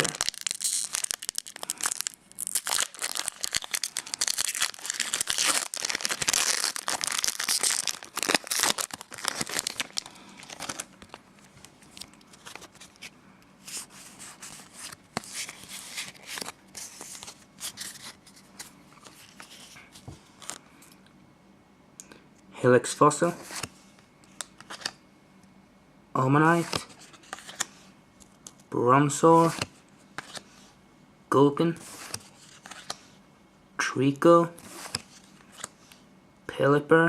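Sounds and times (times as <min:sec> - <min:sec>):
foil wrapper tearing and crinkling: 0:00.0 - 0:11.2.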